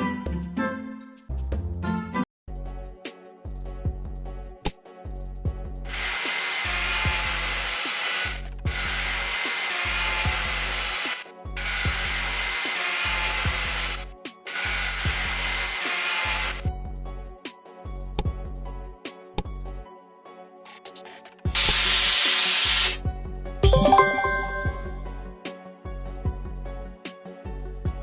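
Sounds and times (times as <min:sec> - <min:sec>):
background music: 0:00.0 - 0:28.0
power tool whirring: 0:05.9 - 0:16.6, 0:20.7 - 0:23.0.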